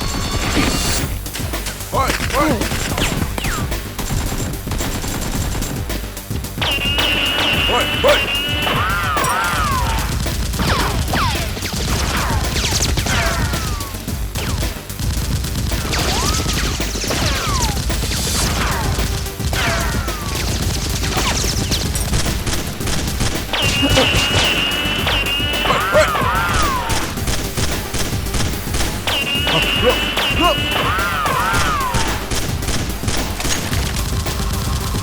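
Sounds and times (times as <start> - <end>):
background music with low bass: 0.0 - 35.0
gunfire sound effects: 6.6 - 35.0.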